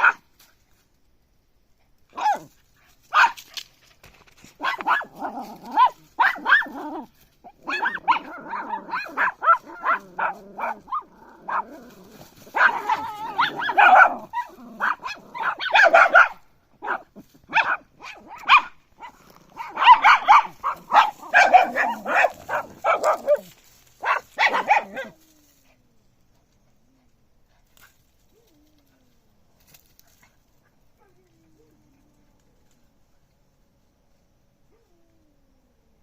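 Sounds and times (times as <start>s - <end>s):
puppy barking: 0.0s - 0.2s, 2.1s - 2.5s, 3.1s - 3.4s, 4.6s - 11.7s, 12.5s - 25.2s.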